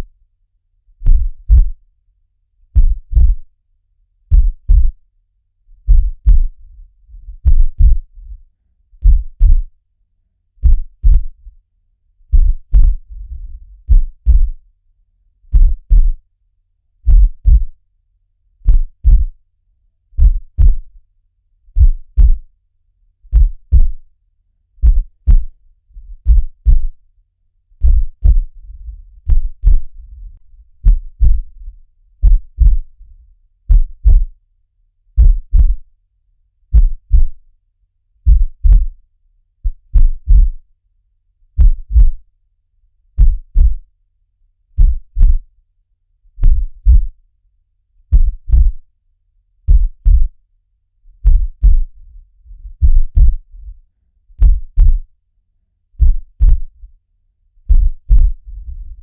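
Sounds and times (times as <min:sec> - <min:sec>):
heartbeat lub-dub thumps: 0:01.0 - 0:01.8, 0:02.7 - 0:03.5, 0:04.3 - 0:05.0, 0:05.8 - 0:08.4, 0:09.0 - 0:09.8, 0:10.6 - 0:11.5, 0:12.3 - 0:14.6, 0:15.5 - 0:16.2, 0:17.0 - 0:17.8, 0:18.6 - 0:19.4, 0:20.2 - 0:21.0, 0:21.7 - 0:22.5, 0:23.3 - 0:24.1, 0:24.8 - 0:27.0, 0:27.8 - 0:34.4, 0:35.1 - 0:35.9, 0:36.7 - 0:37.4, 0:38.2 - 0:39.0, 0:39.6 - 0:40.6, 0:41.5 - 0:42.2, 0:43.2 - 0:43.9, 0:44.8 - 0:45.4, 0:46.4 - 0:47.2, 0:48.1 - 0:48.8, 0:49.7 - 0:50.4, 0:51.2 - 0:53.8, 0:54.4 - 0:55.1, 0:56.0 - 0:56.9, 0:57.7 - 0:59.0.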